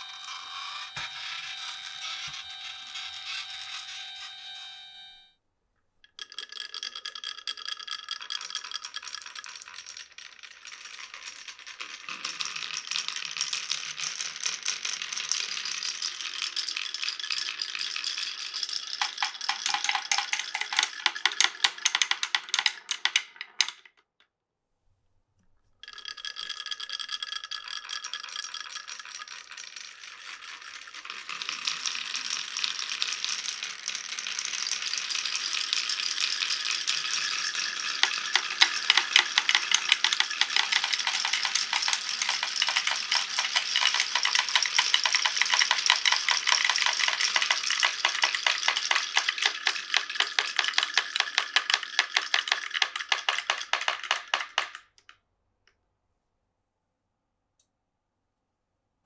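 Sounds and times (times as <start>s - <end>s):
marbles rolling and clicking: 0.0s - 4.4s, 6.0s - 23.9s, 25.8s - 55.1s
ringing tones: 0.0s - 5.3s.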